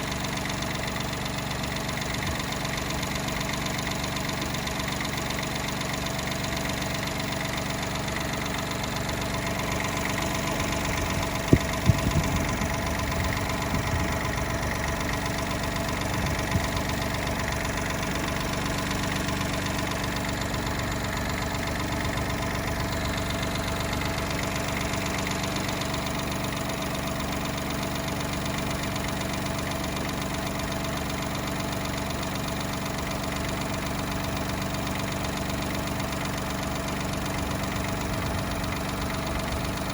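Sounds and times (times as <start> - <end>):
car engine idling: 0.0 - 39.9
sharp engine knocks: 11.3 - 12.8.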